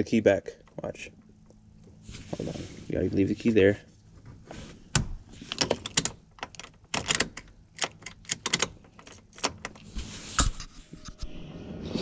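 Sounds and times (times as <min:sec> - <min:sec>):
car key and ignition clicking: 0:05.6 - 0:09.8.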